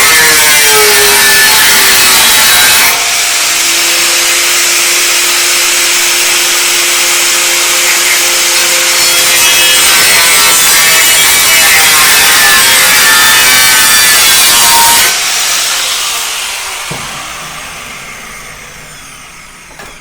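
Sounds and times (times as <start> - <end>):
angle grinder cutting steel: 0.0 - 20.0.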